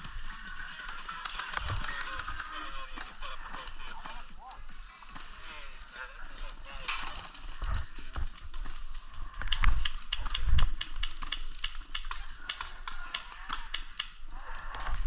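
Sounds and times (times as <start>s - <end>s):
sharp clicks and snaps: 8.4s - 15.0s.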